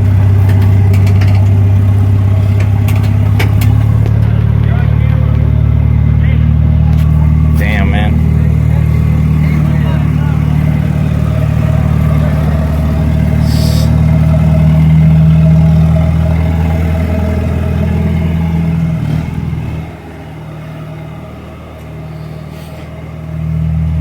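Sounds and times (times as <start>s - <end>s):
forklift engine running: 0.0s - 24.0s
short hiss: 13.4s - 14.0s.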